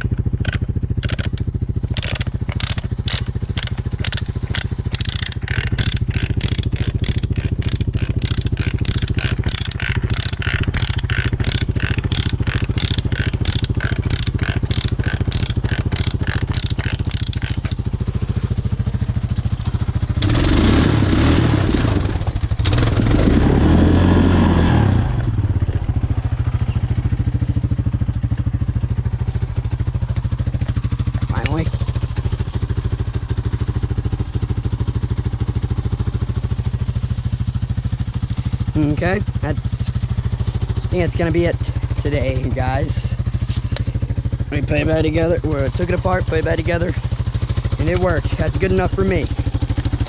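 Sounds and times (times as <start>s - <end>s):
fast even clacking: 0.0s - 17.9s, 31.1s - 31.8s
engine revving: 0.0s - 26.9s, 30.6s - 35.0s
atv engine running: 0.0s - 50.0s.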